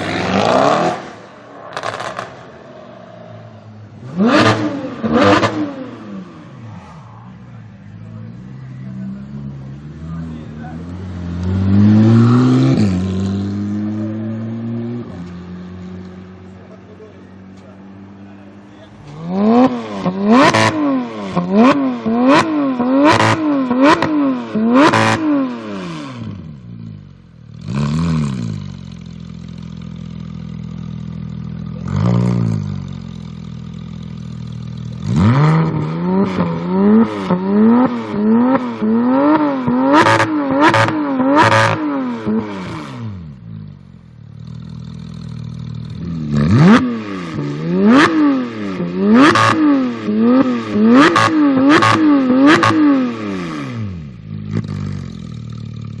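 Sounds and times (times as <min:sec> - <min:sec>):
car engine revving: 0:00.0 - 0:56.0
car engine idling: 0:26.6 - 0:35.1.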